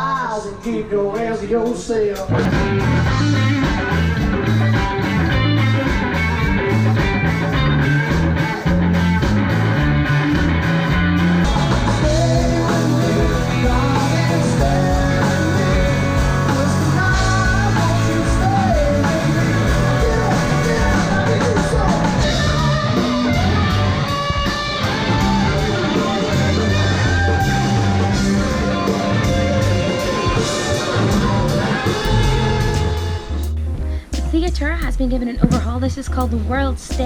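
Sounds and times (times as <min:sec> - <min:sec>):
rock band playing: 0:02.2 - 0:34.5
person singing: 0:12.0 - 0:23.0.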